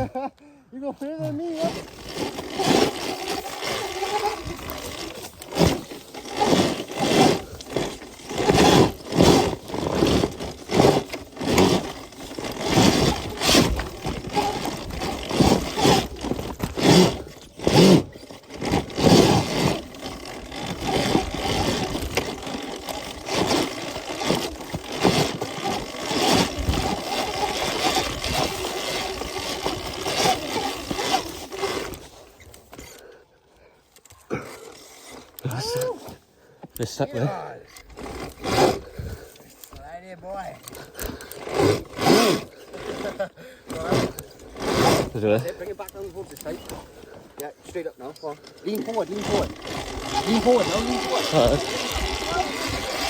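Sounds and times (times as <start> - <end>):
electric motor whine: 48.9 - 53.0.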